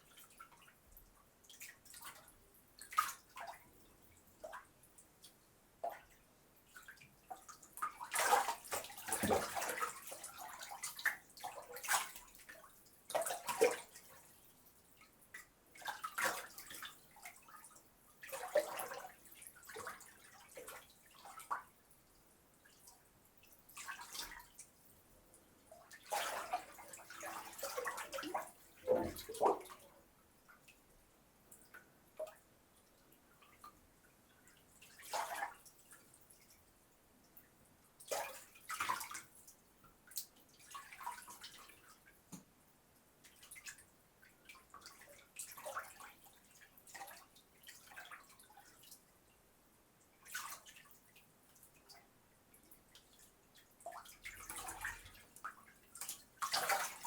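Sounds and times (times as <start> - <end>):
water splashing and pouring: 26.0 - 29.8.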